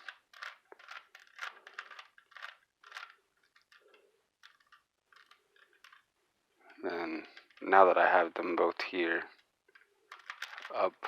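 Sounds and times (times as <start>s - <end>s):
puzzle cube clicking rattles: 0.0s - 6.1s, 7.2s - 7.6s, 9.3s - 10.8s.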